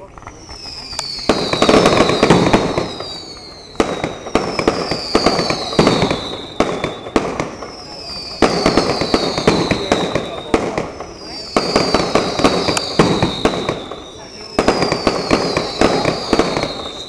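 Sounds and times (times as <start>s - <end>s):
fireworks bangs and crackling: 0.0s - 17.0s
high falling whistle: 0.4s - 10.5s.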